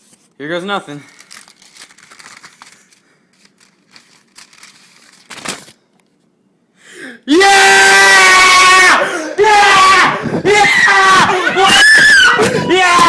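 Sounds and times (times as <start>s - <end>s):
faint crinkling and rustling: 0.0s - 6.3s
person yelling excitedly: 7.3s - 13.0s.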